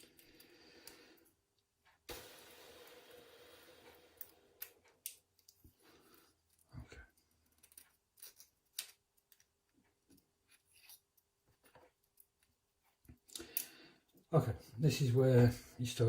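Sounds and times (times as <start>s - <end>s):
faint small metal clicks: 6.4s - 14.2s.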